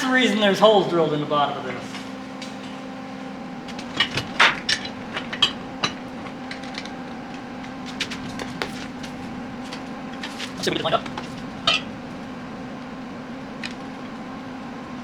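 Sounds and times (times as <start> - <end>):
steel parts clinking together: 3.7 - 12.0.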